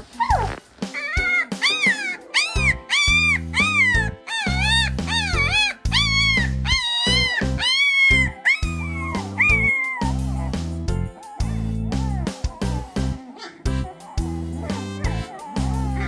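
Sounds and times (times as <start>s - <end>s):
background music with bass line: 0.0s - 16.0s
puppy whining howls: 1.0s - 10.2s.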